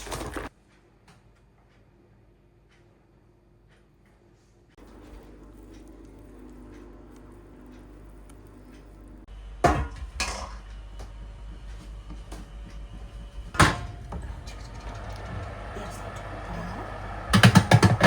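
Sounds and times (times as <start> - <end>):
low steady hum: 4.8 - 18.0.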